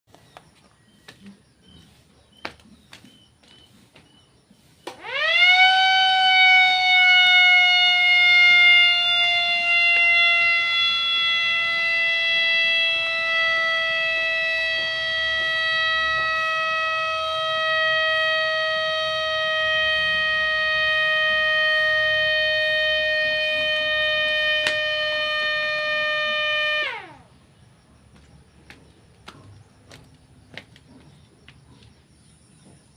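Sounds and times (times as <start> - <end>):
siren horn tone: 4.9 - 27.3.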